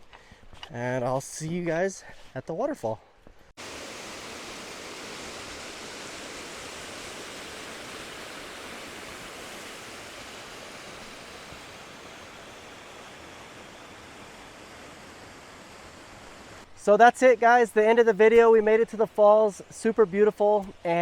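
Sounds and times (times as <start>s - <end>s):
waterfall rushing: 3.6s - 16.7s.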